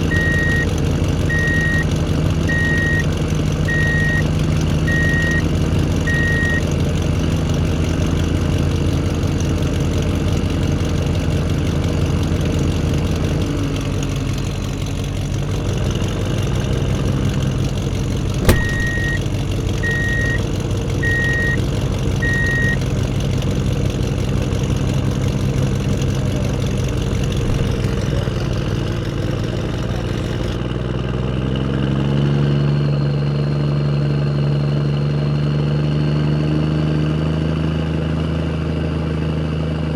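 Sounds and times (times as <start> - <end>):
reversing alarm beeping: 0.0 - 0.7, 1.3 - 1.8, 2.5 - 3.1, 3.7 - 4.3, 4.9 - 5.5, 6.1 - 6.6, 18.4 - 19.2, 19.8 - 20.4, 21.0 - 21.6, 22.2 - 22.8
truck engine idling: 0.0 - 30.6
sharp click: 18.4 - 19.2.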